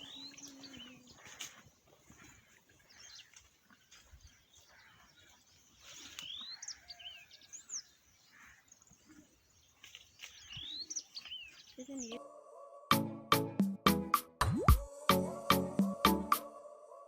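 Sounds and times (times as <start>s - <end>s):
birds chirping faintly: 0.0s - 12.3s.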